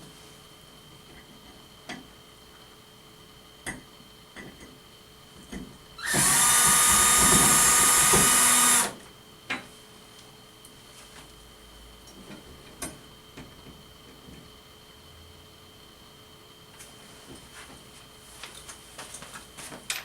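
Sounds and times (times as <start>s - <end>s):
power drill running: 6.0s - 9.0s.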